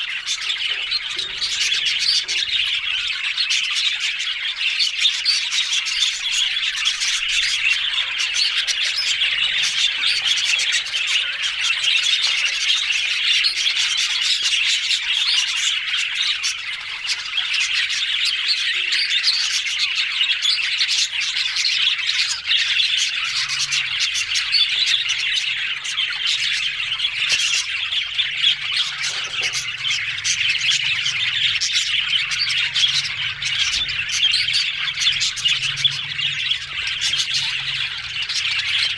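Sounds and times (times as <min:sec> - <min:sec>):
budgerigars chattering and chirping: 0:00.0 - 0:38.9.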